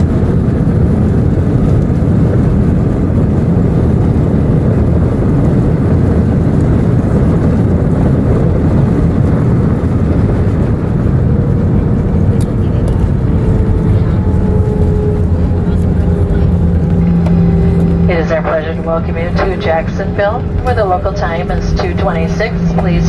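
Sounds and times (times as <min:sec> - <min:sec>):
airliner cabin rumble: 0:00.0 - 0:23.0
faint steady hum: 0:12.4 - 0:23.0.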